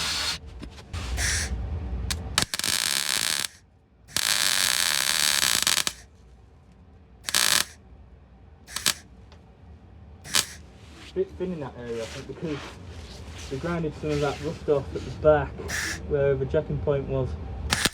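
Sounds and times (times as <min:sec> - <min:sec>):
power tool bursts on metal: 0:00.0 - 0:00.4, 0:01.2 - 0:01.5, 0:02.1 - 0:06.0, 0:07.2 - 0:07.8, 0:08.7 - 0:09.0, 0:10.3 - 0:10.6, 0:15.7 - 0:16.0.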